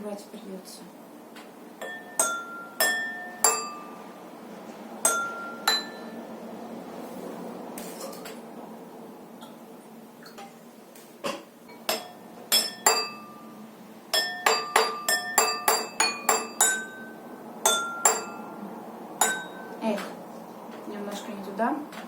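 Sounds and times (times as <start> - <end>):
drinking glasses struck ringing: 1.8 - 4.0, 5.1 - 6.2, 11.9 - 13.5, 14.2 - 18.5, 19.2 - 19.7.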